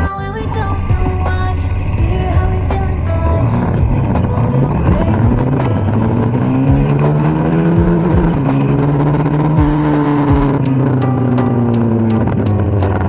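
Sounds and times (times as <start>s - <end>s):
road and wind noise: 0.5s - 13.0s
motorcycle engine pulling: 2.7s - 13.0s.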